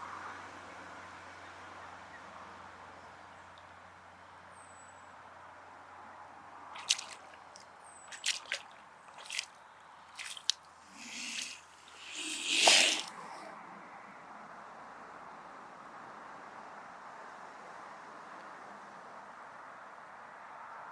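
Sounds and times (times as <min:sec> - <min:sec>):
water lapping and splashing: 0:06.8 - 0:13.5.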